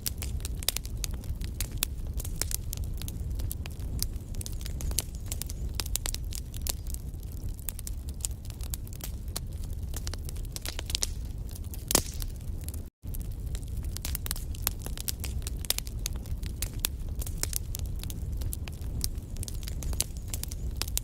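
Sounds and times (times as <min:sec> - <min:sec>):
fire rumbling: 0:00.0 - 0:21.0
logs crackling and snapping: 0:00.0 - 0:21.0.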